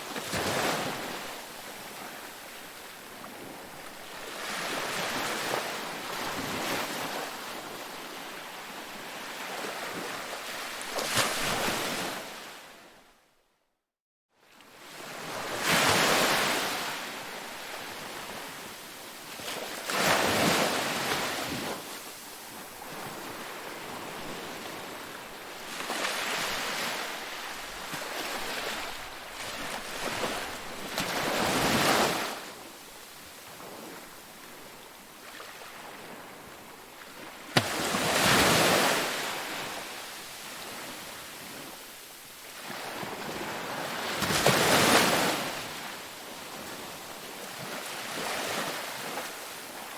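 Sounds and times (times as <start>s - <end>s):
sea waves breaking: 19.4s - 32.7s, 33.4s - 41.8s, 42.6s - 49.9s.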